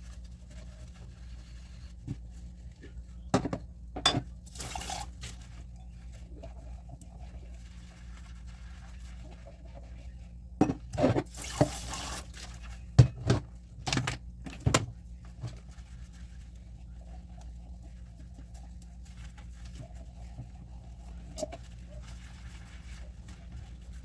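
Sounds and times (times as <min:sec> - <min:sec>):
dishes clinking in sink: 0:03.4 - 0:04.8, 0:10.6 - 0:11.8
tap water gushing: 0:04.4 - 0:05.1, 0:11.2 - 0:12.5.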